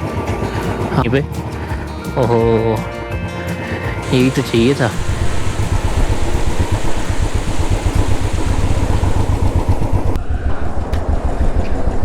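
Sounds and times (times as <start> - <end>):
motorcycle engine thumping: 4.0 - 10.2
wind noise on microphone: 5.0 - 12.0.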